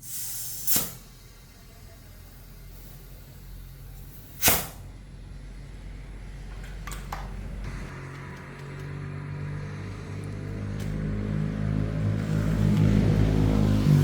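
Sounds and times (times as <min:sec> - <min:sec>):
short loud hiss: 0:00.0 - 0:01.2, 0:04.1 - 0:04.8.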